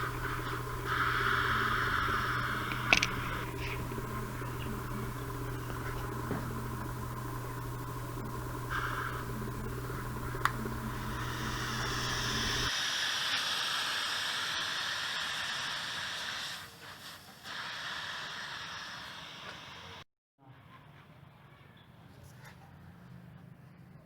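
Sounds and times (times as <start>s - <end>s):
refrigerator compressor humming: 0.0s - 12.7s
air hissing out of pipe: 0.0s - 20.0s.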